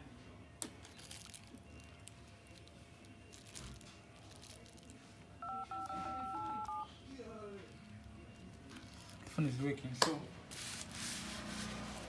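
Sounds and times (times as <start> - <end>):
touch-tone keypad beeps: 5.4 - 6.9.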